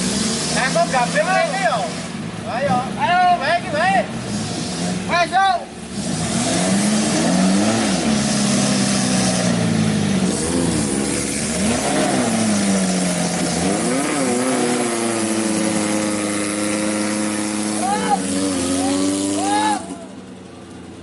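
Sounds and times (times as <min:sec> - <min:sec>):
jeep engine revving: 0:00.0 - 0:21.0.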